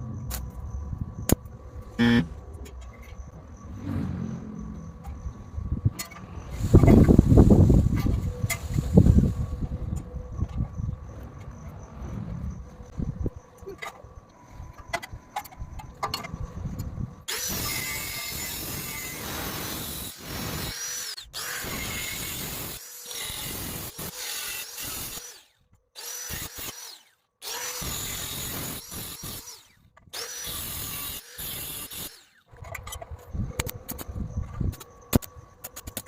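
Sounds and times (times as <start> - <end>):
power tool cutting metal: 2.0 - 2.3, 17.3 - 32.5.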